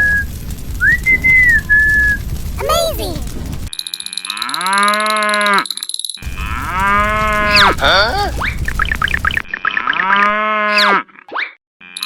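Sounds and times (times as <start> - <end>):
cow mooing: 4.2 - 5.6, 6.3 - 7.8.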